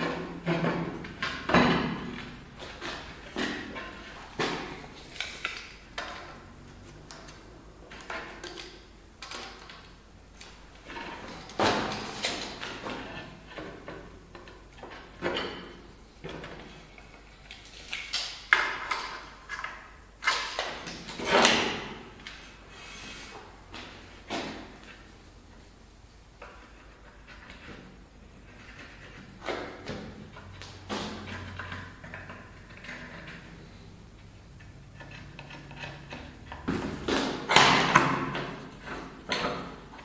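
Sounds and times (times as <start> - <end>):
hard objects knocking and clunking: 0.0 - 9.7, 26.4 - 40.0.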